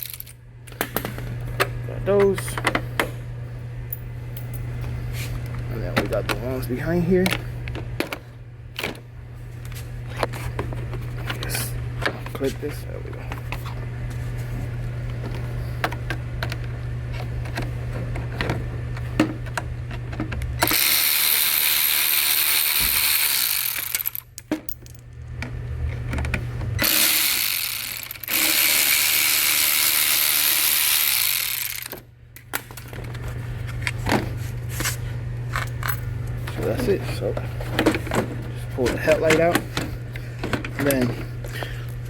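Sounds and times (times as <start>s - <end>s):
loud even power tool whirring: 20.6s - 24.2s, 26.8s - 32.0s.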